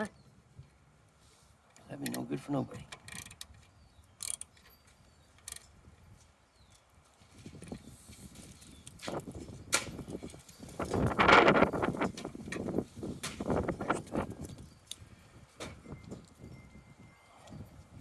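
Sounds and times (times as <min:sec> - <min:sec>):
rustle of handling: 0:00.4 - 0:02.3, 0:04.6 - 0:15.6
socket wrench clicking on metal: 0:04.2 - 0:04.7.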